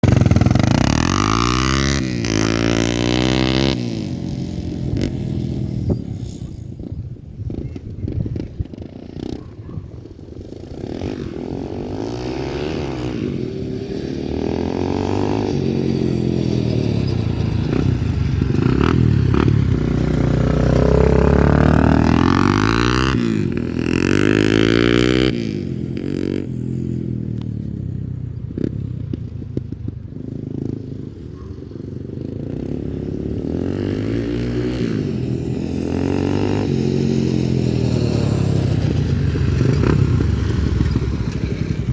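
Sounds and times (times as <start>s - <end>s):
off-road vehicle engine revving: 0.0s - 6.5s, 10.7s - 26.5s, 32.4s - 41.9s.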